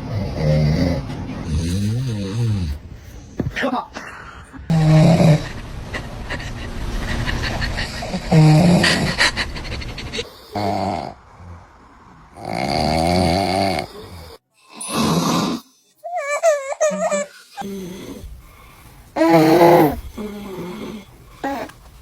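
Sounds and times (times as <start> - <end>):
man snoring: 0.0 - 2.9, 4.7 - 5.6, 8.2 - 9.2, 10.5 - 11.6, 12.3 - 15.7, 17.6 - 18.3, 19.2 - 21.7
baby vocalizing: 19.2 - 21.7.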